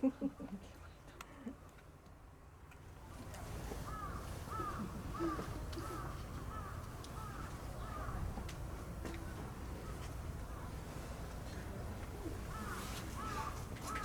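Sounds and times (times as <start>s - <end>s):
crow cawing: 3.9s - 8.2s, 12.5s - 14.0s.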